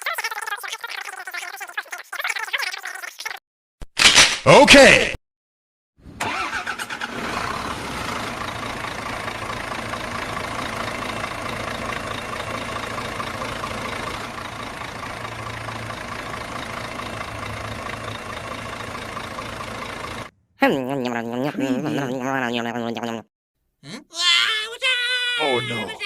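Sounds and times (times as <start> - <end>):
engine idling: 6.2 - 20.3.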